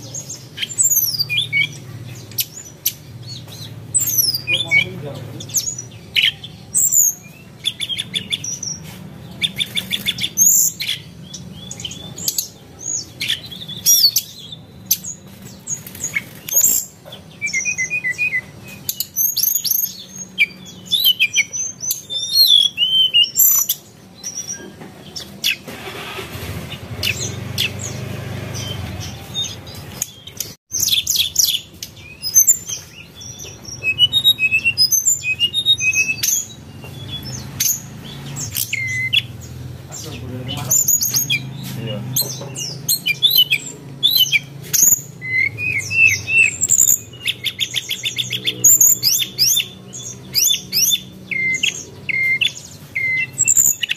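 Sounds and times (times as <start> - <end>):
birds chirping: 0.0 - 53.9.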